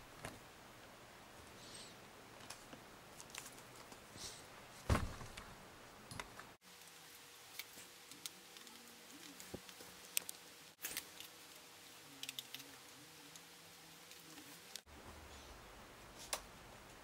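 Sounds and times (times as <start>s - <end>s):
loud knock: 4.9s - 5.4s
small parts clicking and tapping: 12.2s - 13.5s.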